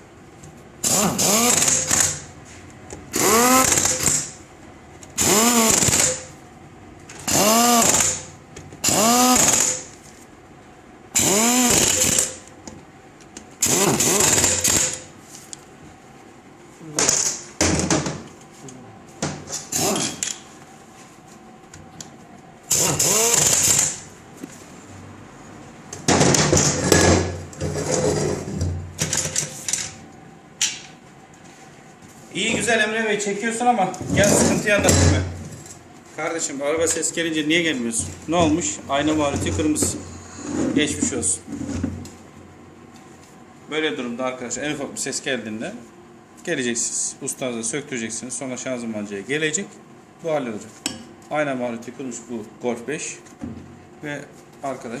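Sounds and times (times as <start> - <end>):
pneumatic impact wrench bursts: 0.8 - 2.3, 3.1 - 4.4, 5.2 - 6.3, 7.2 - 9.9, 11.1 - 12.4, 13.6 - 15.1, 19.6 - 20.3, 22.7 - 24.0.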